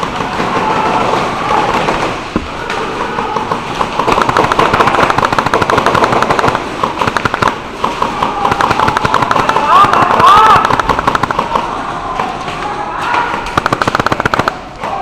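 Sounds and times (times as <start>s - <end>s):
airsoft guns firing rapid bursts: 3.1s - 11.8s, 13.4s - 14.7s.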